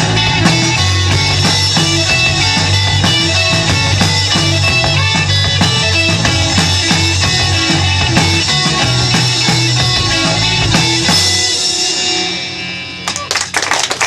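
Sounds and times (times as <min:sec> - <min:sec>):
rock band playing: 0:00.0 - 0:13.6
audience clapping: 0:13.0 - 0:14.0.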